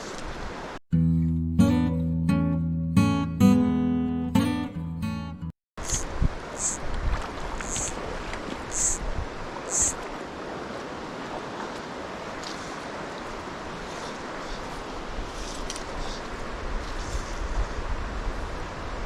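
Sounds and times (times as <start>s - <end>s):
river water rushing: 5.9s - 16.8s.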